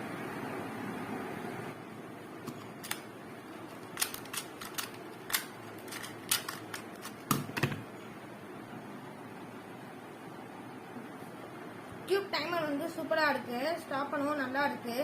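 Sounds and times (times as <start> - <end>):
plastic clicks of cube turning: 2.5 - 3.1, 3.7 - 7.8.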